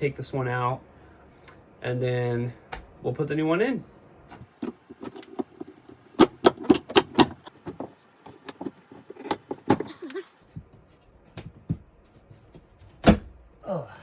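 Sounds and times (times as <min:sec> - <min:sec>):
sharp knocks on plastic box: 0:04.6 - 0:08.7.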